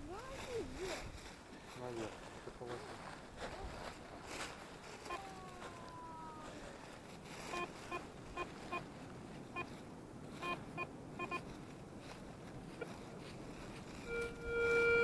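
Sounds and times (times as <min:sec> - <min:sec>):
metal detector beeps: 0:07.5 - 0:08.8, 0:10.4 - 0:11.4, 0:14.0 - 0:15.0.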